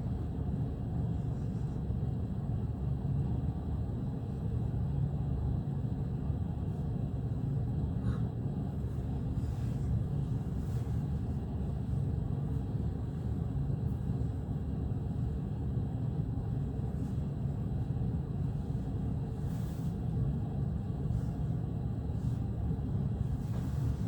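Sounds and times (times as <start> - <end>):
steady low rumbling: 5.4 - 24.0.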